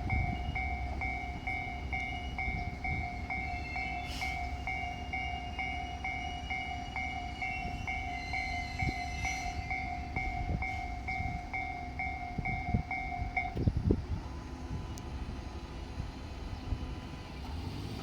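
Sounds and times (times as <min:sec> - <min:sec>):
level crossing alarm ringing: 0:00.0 - 0:13.6
diesel train rumbling past: 0:00.0 - 0:18.0.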